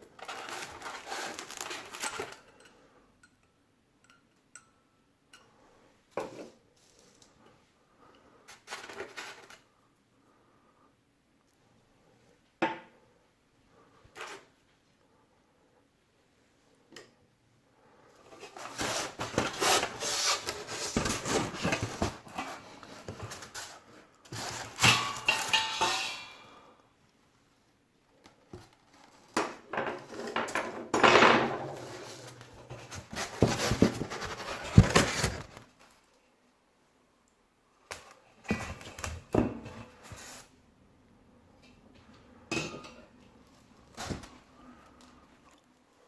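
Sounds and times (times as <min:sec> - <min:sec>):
packaging rustling: 0:00.2 - 0:02.4, 0:31.8 - 0:36.0.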